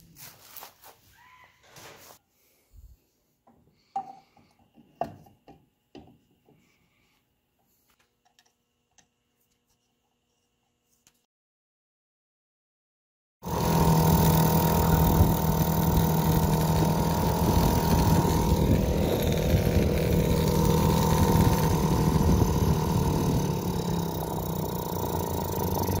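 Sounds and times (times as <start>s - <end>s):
outboard motor running: 13.4s - 26.0s.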